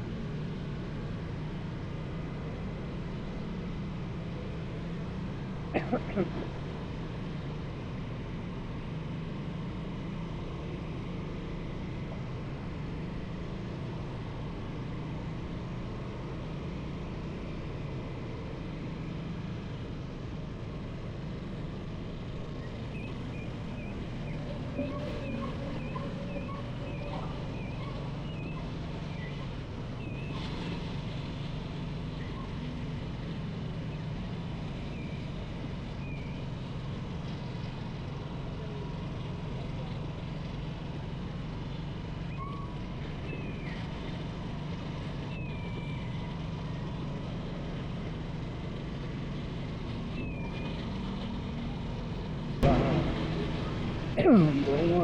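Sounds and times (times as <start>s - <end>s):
motorcycle engine: 47.7s - 55.0s.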